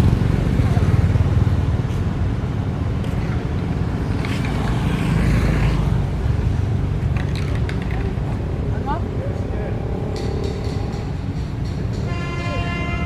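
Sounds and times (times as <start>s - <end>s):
steady low rumble: 6.0s - 12.3s.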